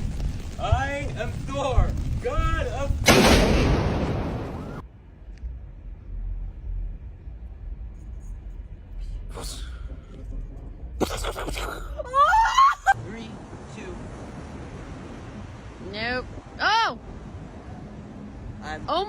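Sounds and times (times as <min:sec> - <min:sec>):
thunder rumble: 0:00.0 - 0:04.9.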